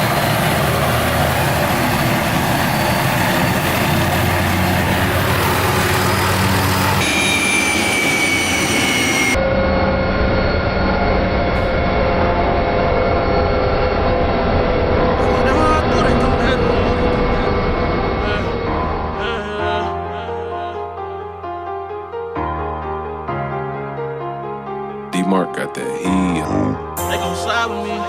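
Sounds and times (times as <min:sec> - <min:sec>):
helicopter engine and rotor: 0:00.0 - 0:19.2
high turbine whine: 0:00.0 - 0:21.4.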